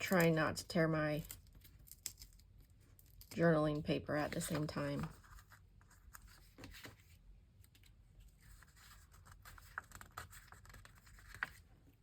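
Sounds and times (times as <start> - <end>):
paper rustling: 4.2 - 12.0.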